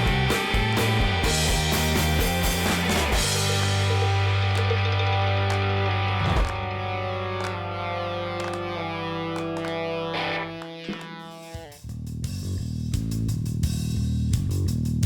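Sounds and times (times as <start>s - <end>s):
sliding electric guitar notes: 0.0s - 11.8s
bass-led music with beat: 0.0s - 15.0s.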